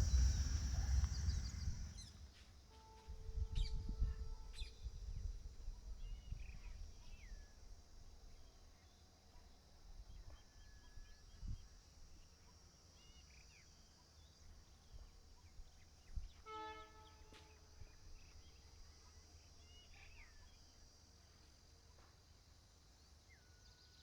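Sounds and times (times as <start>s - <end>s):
distant train horn: 0.0s - 2.0s, 2.7s - 5.2s, 16.3s - 18.0s
insect drone: 0.0s - 9.0s.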